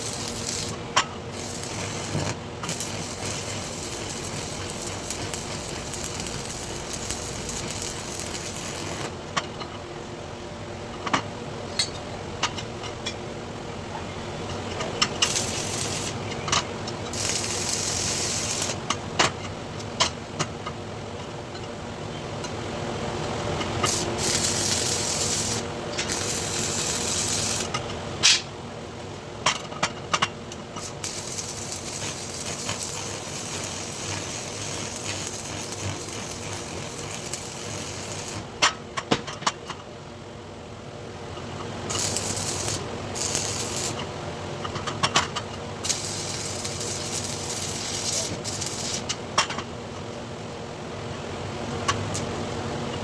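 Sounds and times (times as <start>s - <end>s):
arc welding crackling: 0.0s - 9.2s, 15.1s - 16.3s, 17.1s - 18.9s, 23.5s - 28.4s, 30.7s - 38.7s, 41.8s - 44.1s, 45.8s - 49.2s, 51.9s - 52.4s.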